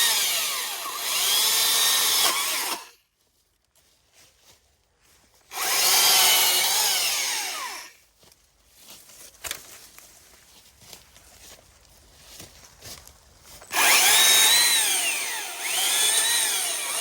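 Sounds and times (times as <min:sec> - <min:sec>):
battery chainsaw whine: 0:00.0 - 0:02.9, 0:05.5 - 0:07.9, 0:13.7 - 0:17.0.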